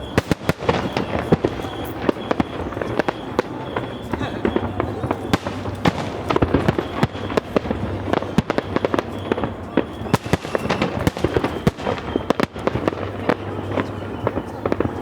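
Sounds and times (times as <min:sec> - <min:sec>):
fireworks bursting: 0:00.0 - 0:15.0
fireworks crackle: 0:00.0 - 0:15.0.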